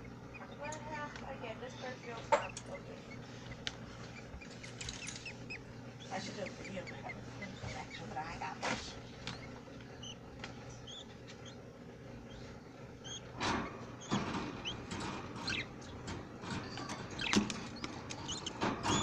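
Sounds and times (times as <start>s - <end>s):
budgerigars chirping: 0.0s - 19.0s
clicks and rustles: 13.3s - 19.0s.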